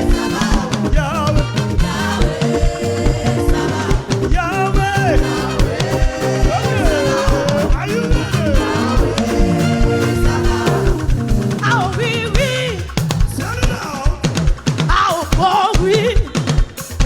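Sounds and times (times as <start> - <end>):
keyboard chords: 0.0 - 13.6
voices singing: 0.0 - 16.5
drum kit beat: 0.0 - 17.0.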